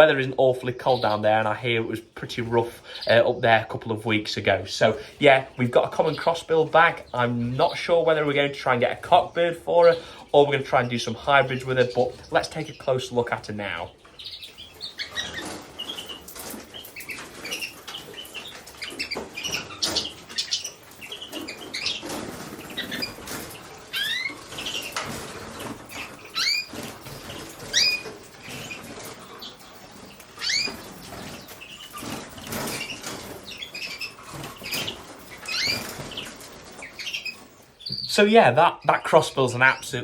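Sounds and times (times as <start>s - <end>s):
small feet pattering: 0.0s - 40.0s
finches chirping: 4.7s - 40.0s
wings fluttering: 14.1s - 37.9s.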